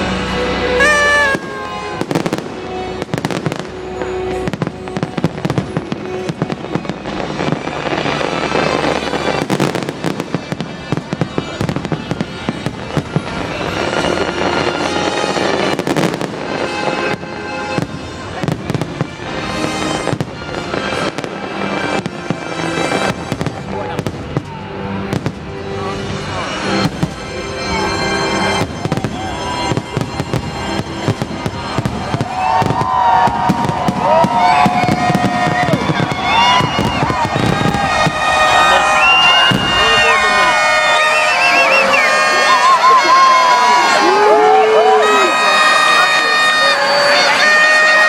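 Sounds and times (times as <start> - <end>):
loud show music: 0.0 - 10.9
fireworks cracks and bangs: 0.0 - 48.0.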